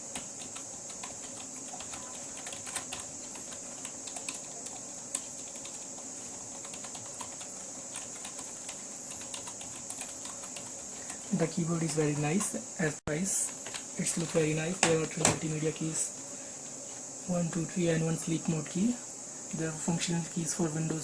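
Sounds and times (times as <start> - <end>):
keyboard typing clicks: 0.1 - 5.8.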